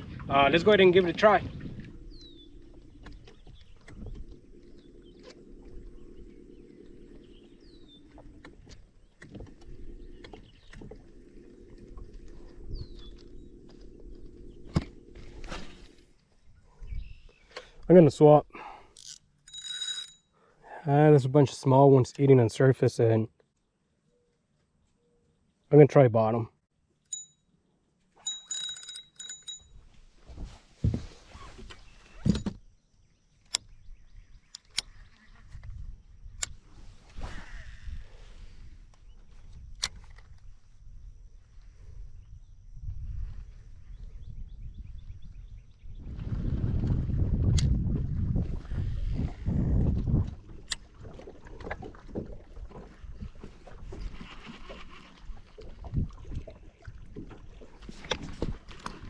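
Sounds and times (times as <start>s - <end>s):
boat motor humming: 0.8s - 17.5s
bird chirp: 1.5s - 15.0s, 31.8s - 35.6s
fishing tackle clicks and knocks: 19.0s - 20.2s, 28.2s - 29.8s.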